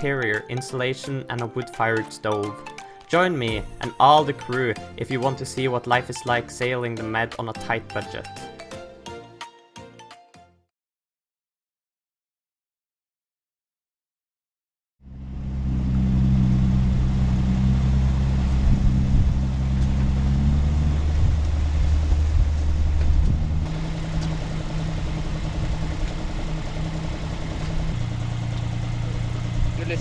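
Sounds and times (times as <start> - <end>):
boat engine running: 15.0 - 30.0.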